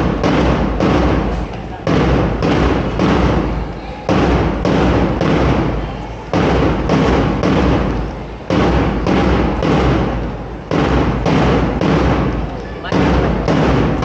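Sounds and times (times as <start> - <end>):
heavy echoing thuds: 0.0 - 14.0.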